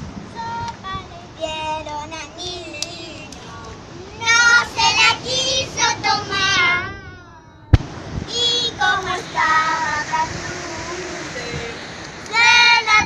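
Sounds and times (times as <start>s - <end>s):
sharp crack: 7.7s - 8.1s.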